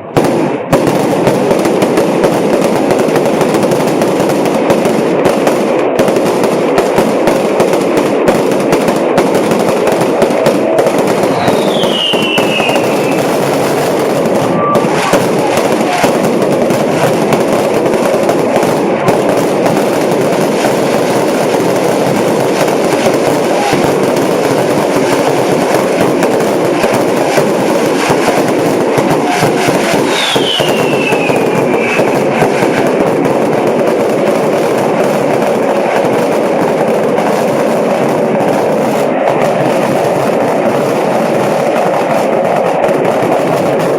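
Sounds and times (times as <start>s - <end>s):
firecrackers crackling: 0.0s - 43.9s
high falling firework whistle: 10.6s - 17.1s, 22.4s - 33.1s.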